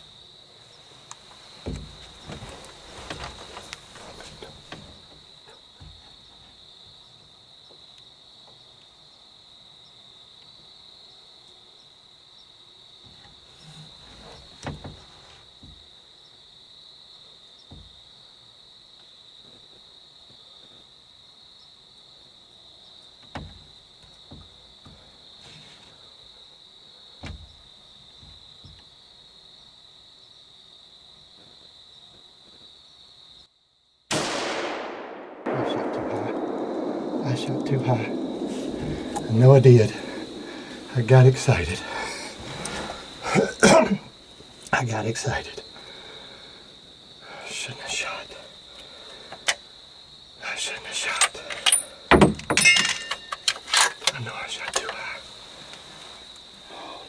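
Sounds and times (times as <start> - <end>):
crickets chirring: 0.0 - 57.0
sharp knocks: 1.6 - 2.5, 23.3 - 23.7, 52.1 - 53.2
soft low thump: 35.5 - 41.0.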